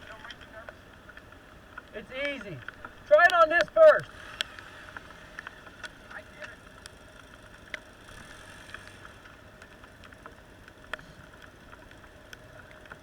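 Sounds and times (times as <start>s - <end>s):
light ticks: 0.0s - 13.0s
vehicle engine humming: 0.0s - 13.0s.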